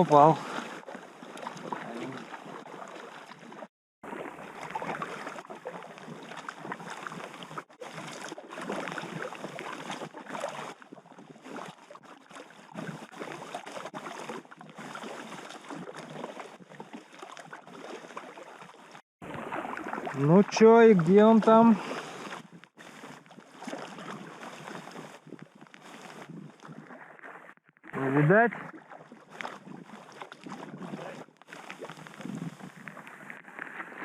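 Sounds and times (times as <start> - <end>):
river water rushing and splashing: 0.0 - 10.8, 17.1 - 25.2.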